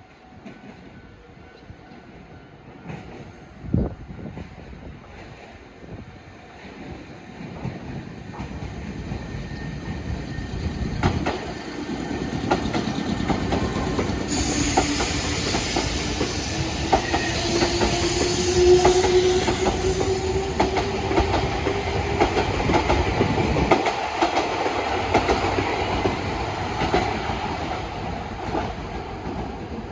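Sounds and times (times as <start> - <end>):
electric train whine: 6.0 - 29.8
train wheels clattering on rails: 6.6 - 29.9.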